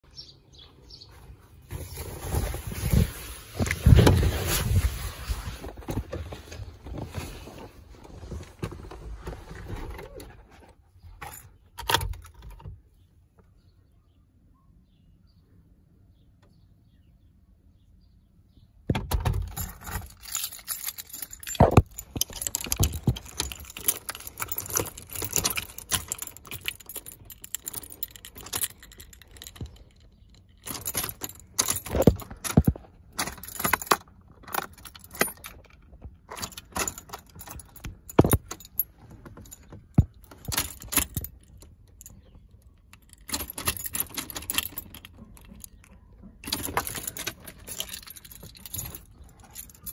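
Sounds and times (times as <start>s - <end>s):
metallic jingling and clattering: 19.0s - 49.9s.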